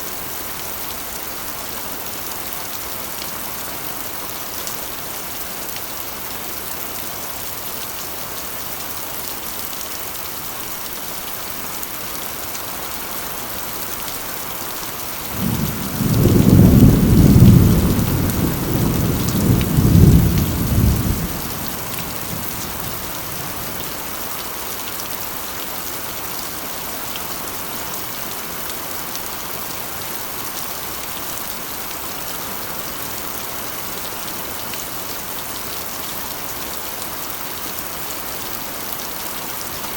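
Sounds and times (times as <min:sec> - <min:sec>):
rain drumming on metal roof: 0:11.8 - 0:25.4
thunder rumbling: 0:15.3 - 0:23.8.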